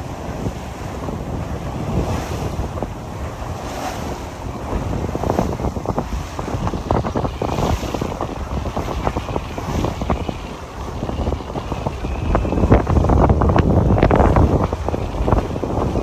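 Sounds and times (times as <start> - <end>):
water rushing along a hull: 0.0 - 16.0
wind buffeting microphone: 0.0 - 16.0.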